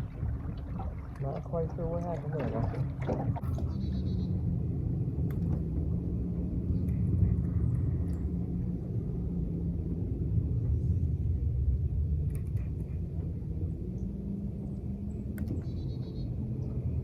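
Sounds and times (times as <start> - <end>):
boat motor rumbling: 0.0 - 17.0
light clicks: 5.2 - 5.9, 12.2 - 13.4, 14.8 - 16.3.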